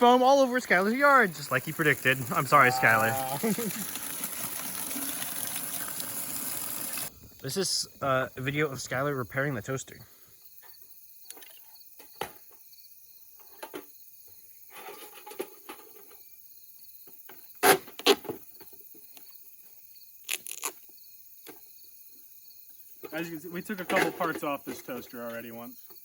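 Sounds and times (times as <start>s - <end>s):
steady high hiss: 0.0s - 4.2s, 6.4s - 9.9s.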